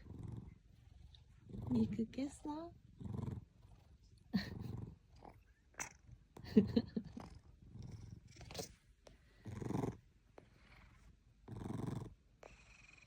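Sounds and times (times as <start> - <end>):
pet snoring: 0.0 - 0.6, 1.4 - 2.1, 2.9 - 6.0, 9.4 - 13.0.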